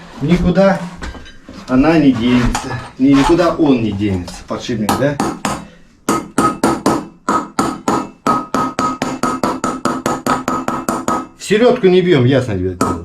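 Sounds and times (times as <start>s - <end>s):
hammer blows with metallic ring: 4.9s - 11.4s.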